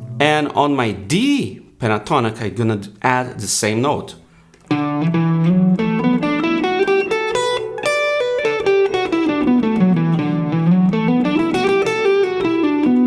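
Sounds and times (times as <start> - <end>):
guitar playing a scale: 0.0 - 1.2, 4.2 - 13.0.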